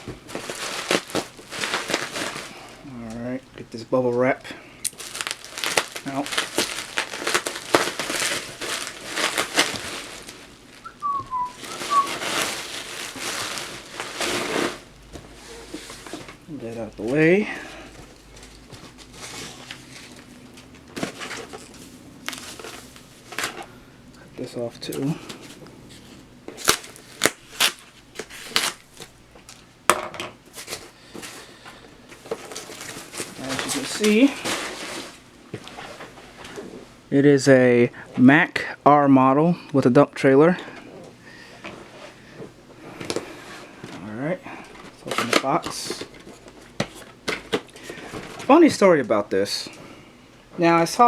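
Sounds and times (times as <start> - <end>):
packaging being handled and cut: 0.0 - 2.7, 4.9 - 16.3, 18.3 - 23.6, 26.5 - 29.6, 32.2 - 35.2
bubble wrap crinkling and rustling: 0.0 - 3.4, 4.1 - 23.7, 24.4 - 29.7, 30.4 - 37.1, 40.6 - 49.8
whistle-like chirps: 10.8 - 12.2.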